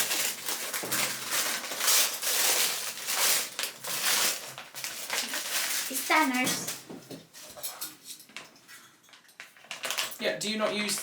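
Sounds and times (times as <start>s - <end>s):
plastic packaging crinkling: 0.0s - 6.8s, 9.4s - 11.0s.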